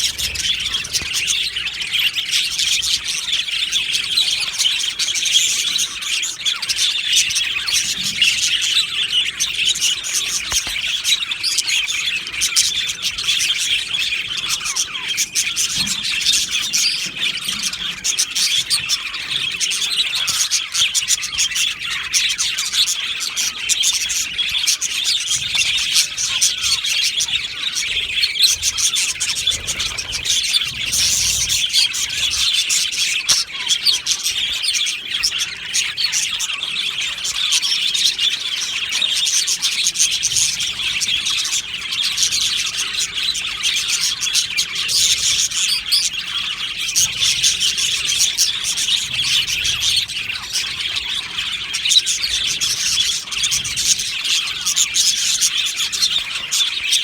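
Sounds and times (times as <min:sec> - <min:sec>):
budgerigars chattering and chirping: 0:00.0 - 0:57.0.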